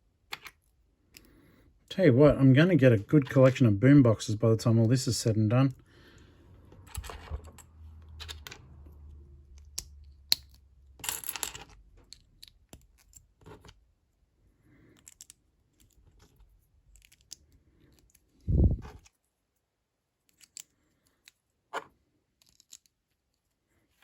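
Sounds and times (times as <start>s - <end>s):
plastic pieces clicking: 22.4s - 23.1s.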